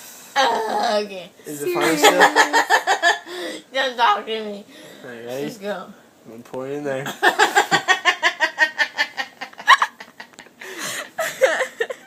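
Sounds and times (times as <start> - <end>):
woman laughing: 1.8 - 3.5, 7.2 - 12.0.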